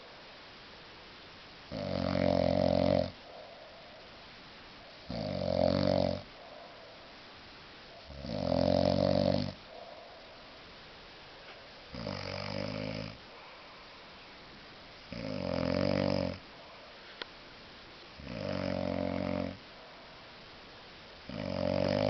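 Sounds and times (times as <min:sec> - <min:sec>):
man snoring heavily: 0:01.7 - 0:03.2, 0:05.1 - 0:06.3, 0:08.1 - 0:09.6, 0:11.9 - 0:13.2, 0:15.1 - 0:16.4, 0:18.2 - 0:19.6, 0:21.3 - 0:22.0
quiet out-breaths: 0:09.6 - 0:10.7, 0:13.2 - 0:14.5.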